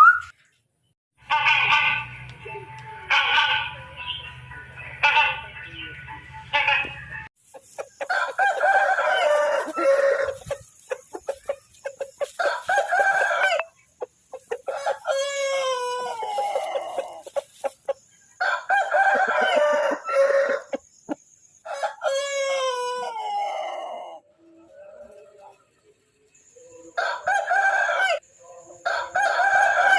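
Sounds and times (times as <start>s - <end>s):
chicken clucks and clicks: 6.8s - 15.2s, 16.0s - 18.3s, 19.0s - 22.0s
roosters crowing: 8.0s - 13.7s, 14.5s - 17.7s, 18.4s - 21.0s, 21.6s - 24.3s, 26.9s - 29.9s.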